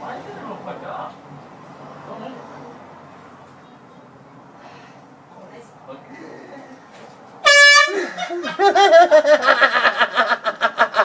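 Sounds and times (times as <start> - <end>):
air horn blast: 7.4 - 8.1
laughter: 7.9 - 11.0.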